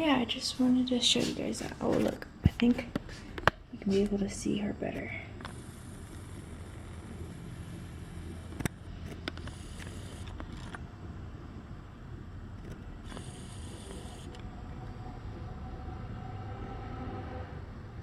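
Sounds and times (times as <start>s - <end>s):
steady low rumble: 0.0s - 18.0s
camera handling clicks and rubbing: 8.6s - 10.8s.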